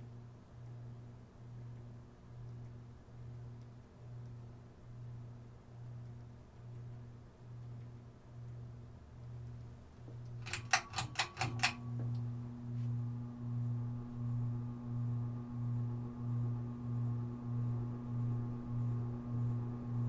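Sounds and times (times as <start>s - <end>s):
ceiling fan motor humming: 0.0s - 20.0s
quick clicks: 10.4s - 11.8s
higher hum tone: 10.5s - 20.0s.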